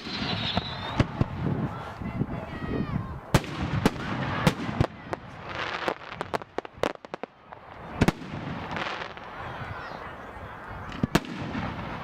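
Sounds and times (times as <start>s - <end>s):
firework shells bursting: 0.0s - 1.4s
firework crackling: 0.0s - 2.0s, 3.2s - 12.0s.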